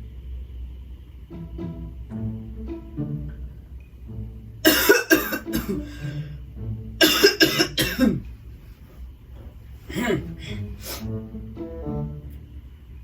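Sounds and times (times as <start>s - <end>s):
music with low bowed strings: 0.0s - 13.0s
person coughing hard: 4.7s - 6.1s, 7.0s - 8.3s, 9.9s - 11.0s.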